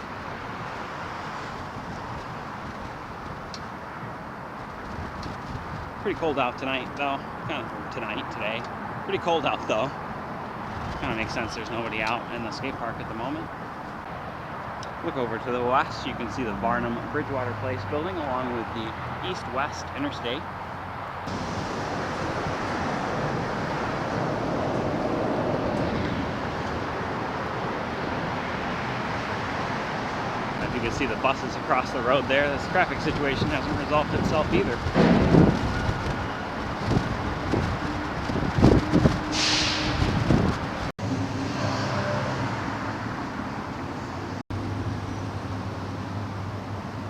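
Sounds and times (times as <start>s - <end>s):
road traffic roar: 0.0s - 47.0s
wind on microphone: 1.4s - 7.6s, 33.0s - 40.9s.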